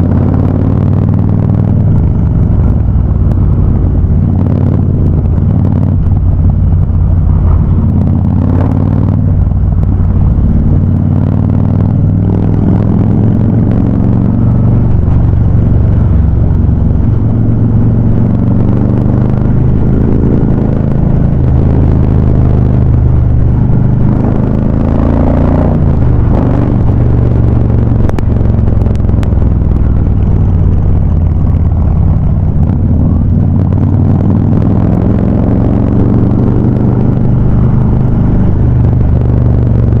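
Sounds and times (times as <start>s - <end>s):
motorcycle engines rumbling: 0.0s - 40.0s.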